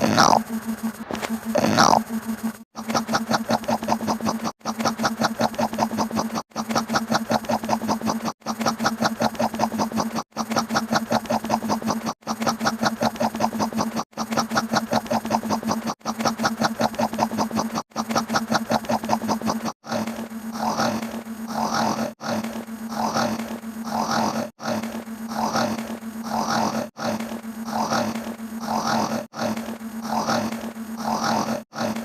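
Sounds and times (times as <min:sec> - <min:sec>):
steady hum: 0:00.0 - 0:32.0
pulsing engine-like rattle: 0:00.1 - 0:19.6.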